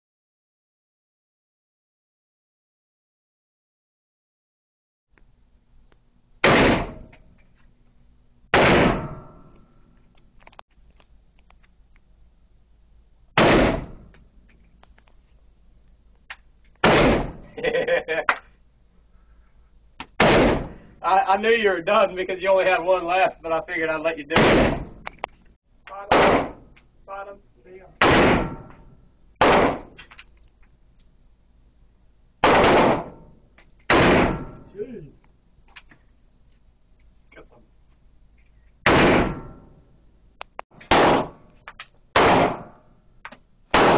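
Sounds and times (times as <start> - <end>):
gunshots with echo: 6.4 - 7.1, 8.5 - 9.5, 13.4 - 14.0, 16.8 - 17.5, 20.2 - 20.8, 24.3 - 25.0, 26.0 - 26.6, 28.0 - 28.8, 29.4 - 30.0, 32.4 - 33.3, 33.9 - 34.7, 38.8 - 39.6, 40.9 - 41.4, 42.2 - 42.8.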